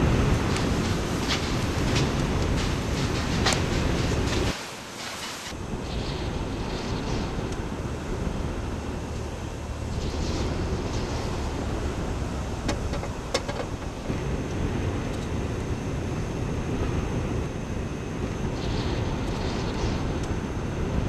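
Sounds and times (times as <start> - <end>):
strong wind on microphone: 5.4 - 21.0.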